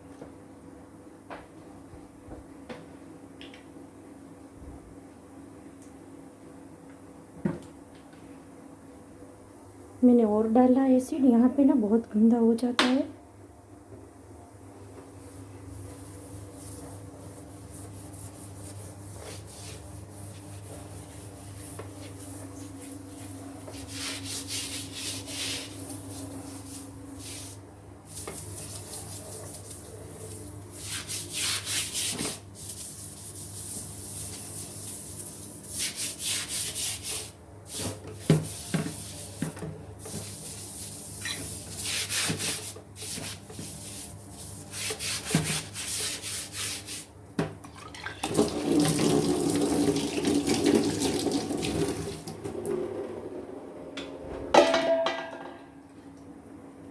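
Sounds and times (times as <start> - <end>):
stiff brush scrubbing surface: 15.8 - 39.4, 40.0 - 47.1.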